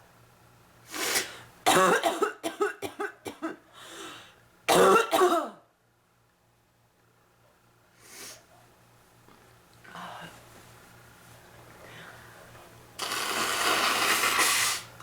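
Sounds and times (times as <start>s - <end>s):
woman coughing: 1.7s - 3.6s, 4.7s - 5.6s.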